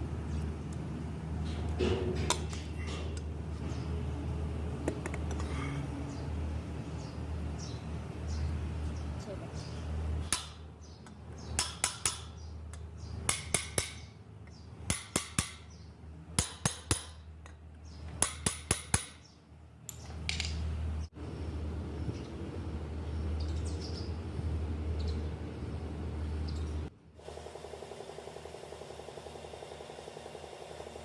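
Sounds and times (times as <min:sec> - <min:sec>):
sharp metallic clicks: 0:10.2 - 0:15.7, 0:16.4 - 0:19.2
steady low hum: 0:20.5 - 0:27.4.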